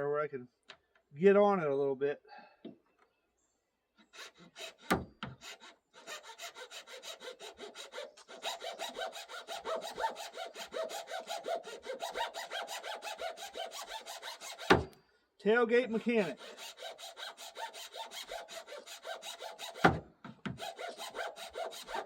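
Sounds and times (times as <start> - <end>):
file rasping on metal: 4.1 - 14.9, 16.0 - 22.0.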